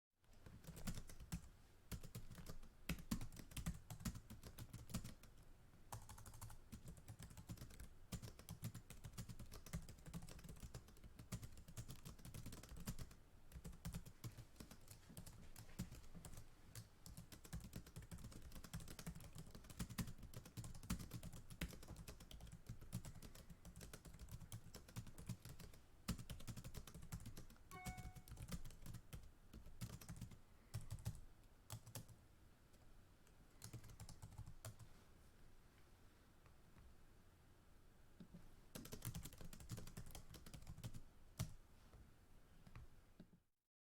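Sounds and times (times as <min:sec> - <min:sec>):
fast typing on keyboard: 0:00.4 - 0:32.2, 0:33.6 - 0:34.8, 0:38.7 - 0:41.6.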